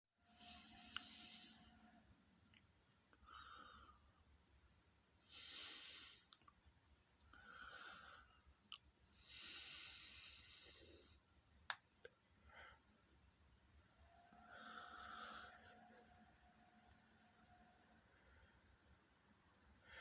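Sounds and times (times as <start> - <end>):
slow hissing breaths: 0.2 - 2.2, 3.2 - 4.3, 5.2 - 6.4, 7.2 - 11.4, 13.9 - 20.0.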